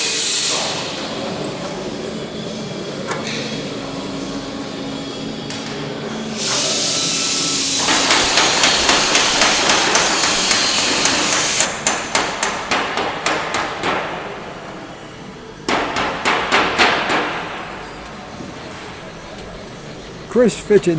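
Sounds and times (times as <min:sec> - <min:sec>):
pneumatic rivet gun hammering: 0:06.3 - 0:14.8, 0:15.7 - 0:18.2.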